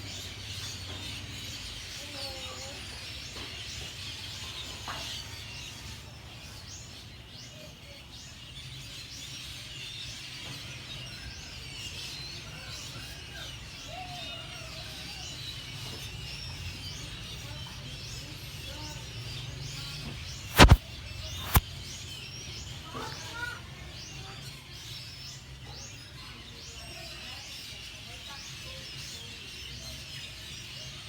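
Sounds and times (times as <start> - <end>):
small birds chirping: 0.0 - 31.0
loud sharp double click: 20.5 - 20.8, 21.4 - 21.6.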